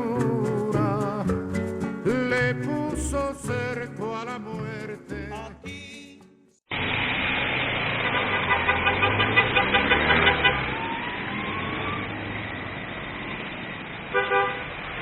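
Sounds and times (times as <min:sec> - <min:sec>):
street traffic: 0:00.0 - 0:15.0
car horn toots: 0:08.2 - 0:10.8, 0:14.1 - 0:14.7.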